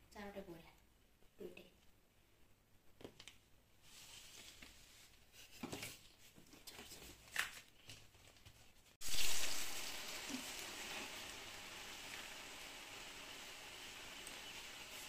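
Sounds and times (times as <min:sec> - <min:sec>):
batter sizzling in hot oil: 0:09.0 - 0:15.0.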